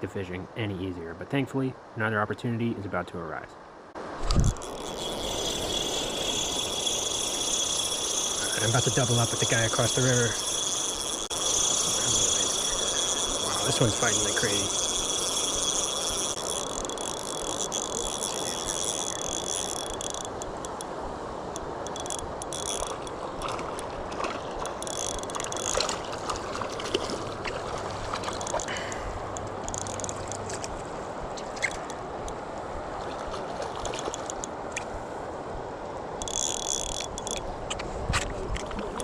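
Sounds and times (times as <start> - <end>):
river current flowing: 0.0 - 39.0
high steady buzz: 4.3 - 20.9.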